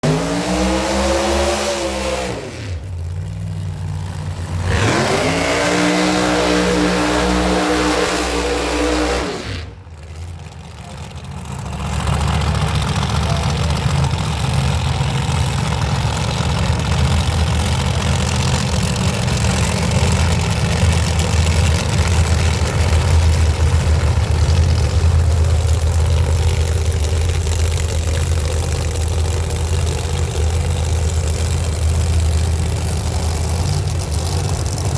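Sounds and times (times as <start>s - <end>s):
big engine idling: 0.0s - 34.9s
race car engines revving: 0.0s - 34.9s.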